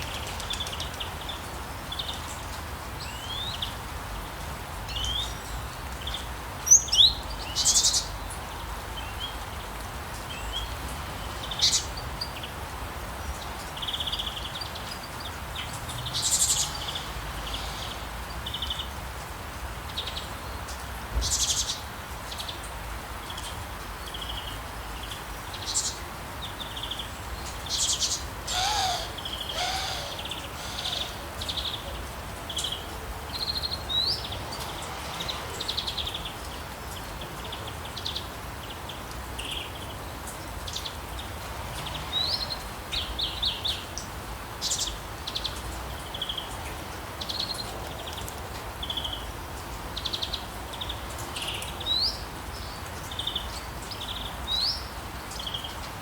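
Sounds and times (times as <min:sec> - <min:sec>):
light rain hiss: 0:00.0 - 0:56.0
songbirds chirping and trilling: 0:00.0 - 0:56.0
lower-pitched bird call: 0:27.8 - 0:32.0.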